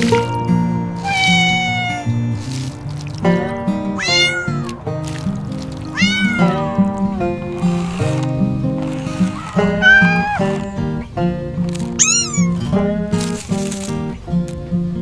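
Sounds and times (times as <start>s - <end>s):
background music: 0.0s - 15.0s
kitten meowing: 1.0s - 2.1s, 4.0s - 4.7s, 5.9s - 6.6s, 12.0s - 12.6s.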